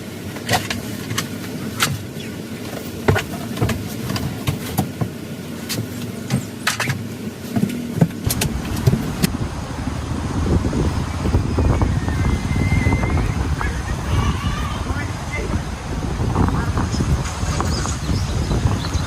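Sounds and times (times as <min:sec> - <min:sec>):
wind buffeting microphone: 0:07.6 - 0:19.0.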